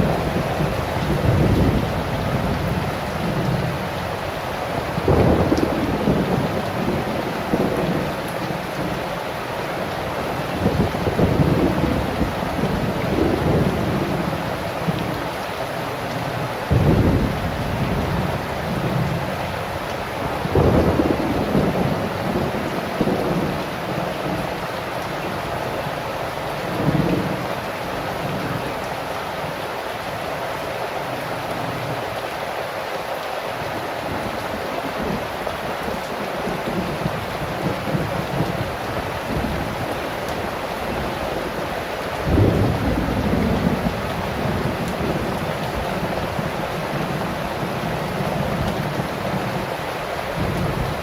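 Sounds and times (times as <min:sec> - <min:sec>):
thunder rumbling: 0:00.0 - 0:09.0, 0:10.3 - 0:15.1, 0:16.7 - 0:19.4, 0:20.2 - 0:24.5, 0:35.9 - 0:49.7
heavy rain falling: 0:00.0 - 0:51.0.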